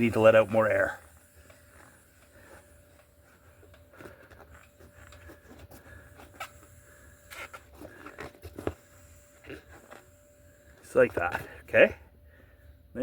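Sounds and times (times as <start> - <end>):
hands working bicycle tyre: 0.0 - 11.8.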